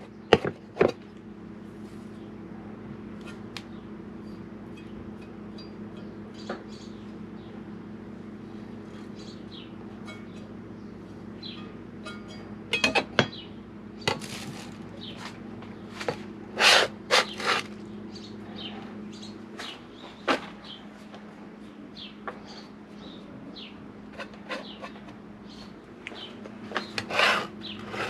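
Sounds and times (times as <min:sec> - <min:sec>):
birds chirping faintly: 0:00.0 - 0:16.5, 0:17.2 - 0:28.0
steady low hum: 0:00.0 - 0:28.0
scraping and rustling: 0:14.1 - 0:17.9, 0:26.4 - 0:28.0.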